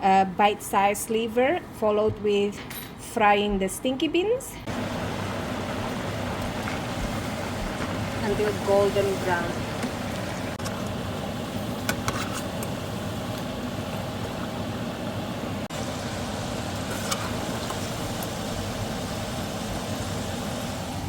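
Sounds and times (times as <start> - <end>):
potatoes sizzling in oil: 4.7 - 14.7, 15.7 - 21.0.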